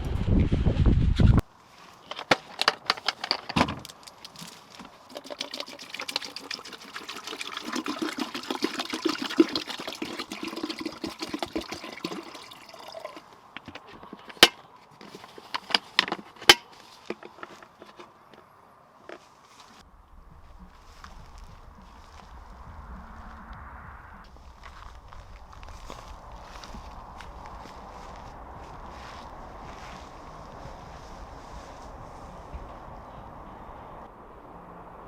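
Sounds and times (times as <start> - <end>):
water pouring into container: 4.4 - 13.4.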